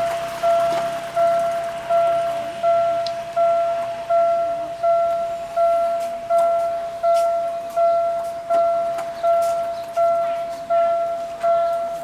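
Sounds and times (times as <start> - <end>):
level-crossing warning bell ringing: 0.0 - 12.0.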